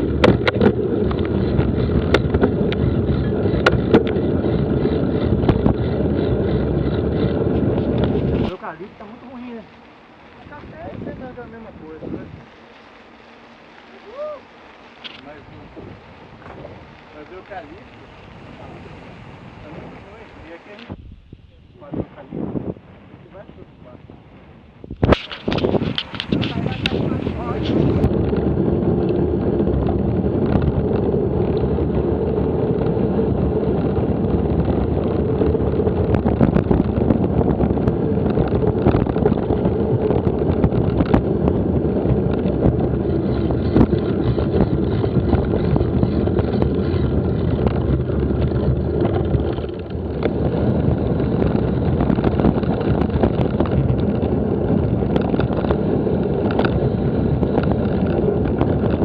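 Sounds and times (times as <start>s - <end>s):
bike knocks and rattles: 0.0s - 8.6s, 35.6s - 59.0s
wind buffeting microphone: 0.0s - 59.0s.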